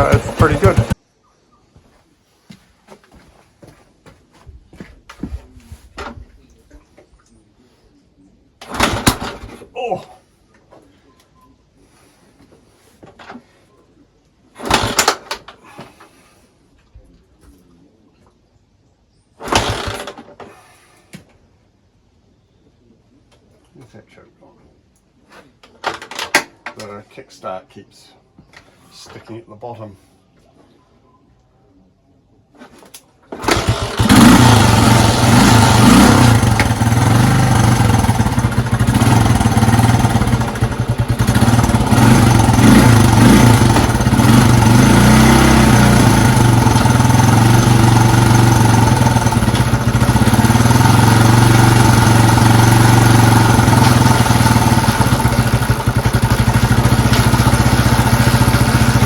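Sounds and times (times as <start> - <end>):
motorcycle engine kick-started: 0.0 - 1.0, 8.6 - 9.7, 14.6 - 16.1, 19.4 - 20.7, 25.7 - 26.5, 32.9 - 59.0.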